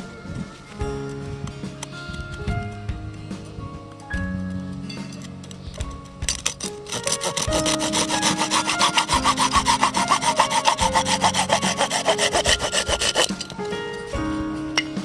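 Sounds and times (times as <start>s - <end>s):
hand saw cutting wood: 6.7s - 13.6s.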